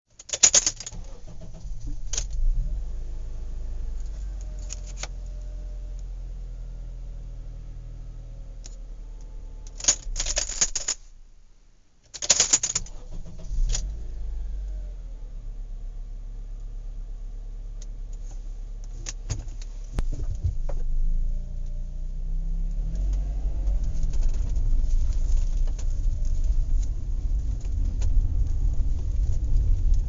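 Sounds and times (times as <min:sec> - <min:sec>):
low steady rumble: 0:00.6 - 0:30.0.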